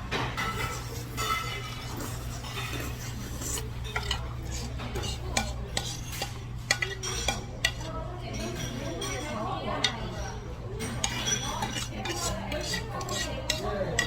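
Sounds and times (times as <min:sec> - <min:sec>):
cutlery clinking and scraping dish: 0:00.1 - 0:14.0.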